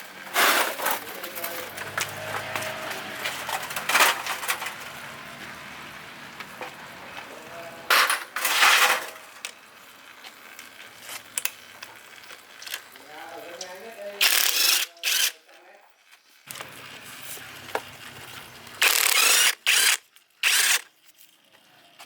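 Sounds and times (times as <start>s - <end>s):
metal tools clinking: 7.9s - 9.5s.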